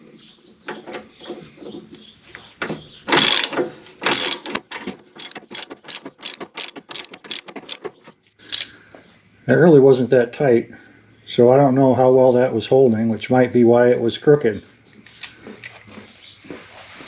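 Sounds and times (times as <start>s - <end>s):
ratchet wrench clicking: 3.1s - 4.6s, 5.2s - 7.8s, 8.5s - 8.7s
ratchet clacks: 3.1s - 8.7s.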